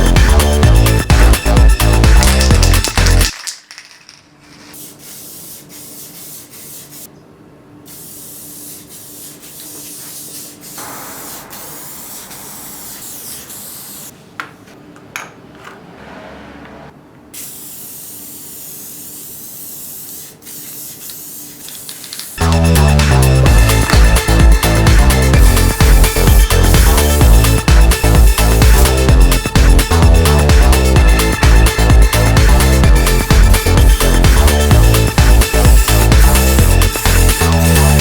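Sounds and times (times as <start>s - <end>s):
spraying hiss: 7.9s - 14.1s.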